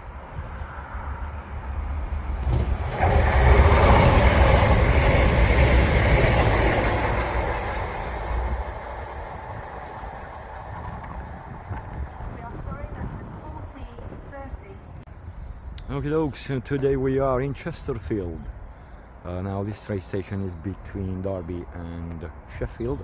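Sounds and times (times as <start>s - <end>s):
train passing with rumble: 0.0s - 18.4s.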